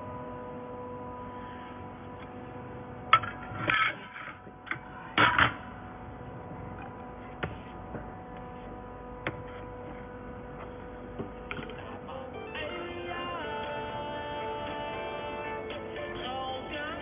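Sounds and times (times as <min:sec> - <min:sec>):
laser welding machine hum: 0:00.0 - 0:17.0.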